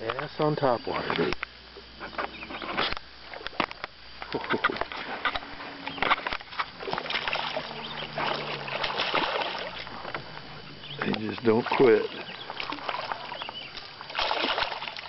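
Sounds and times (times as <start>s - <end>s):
faint low hum: 0.0s - 15.0s
water splashing: 4.3s - 15.0s
clicks and knocks in boat: 10.9s - 15.0s.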